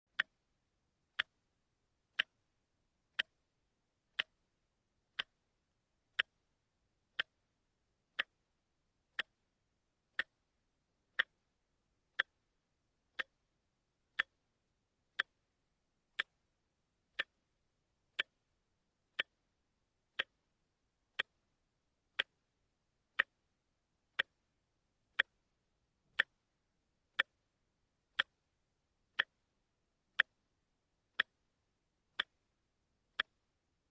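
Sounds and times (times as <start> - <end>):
wristwatch ticking: 0.1 - 0.4, 1.1 - 1.4, 2.1 - 2.4, 3.1 - 3.4, 4.1 - 4.5, 5.1 - 5.5, 6.1 - 6.5, 7.1 - 7.5, 8.1 - 8.5, 9.1 - 9.4, 10.1 - 10.5, 11.1 - 11.5, 12.1 - 13.5, 14.1 - 14.5, 15.1 - 16.5, 17.1 - 17.5, 18.1 - 18.5, 19.1 - 19.5, 20.1 - 20.5, 21.1 - 21.5, 22.1 - 22.5, 23.1 - 24.5, 25.1 - 25.5, 26.1 - 26.5, 27.1 - 27.5, 28.1 - 28.5, 29.1 - 31.5, 32.1 - 33.9.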